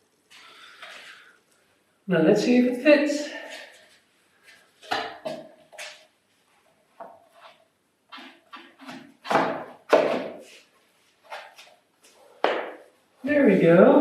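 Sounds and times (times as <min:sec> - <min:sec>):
floorboard knocking into place: 0:08.8 - 0:10.4, 0:12.4 - 0:12.8.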